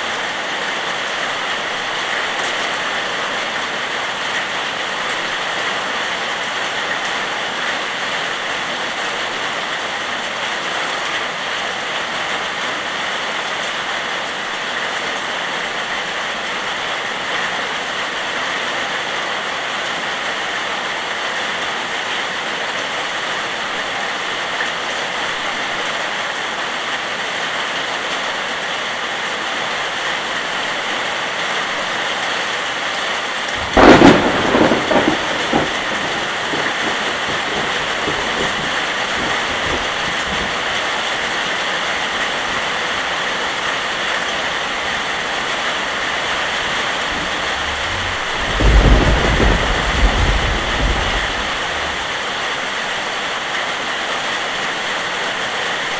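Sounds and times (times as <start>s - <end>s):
steady rain hiss: 0.0s - 55.9s
thunder crack and rumble: 33.5s - 42.8s, 43.8s - 52.5s.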